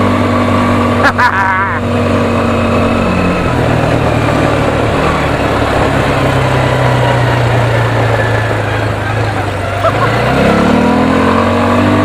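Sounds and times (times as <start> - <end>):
quad bike engine running: 0.0 - 12.0
wind rushing: 1.8 - 8.9.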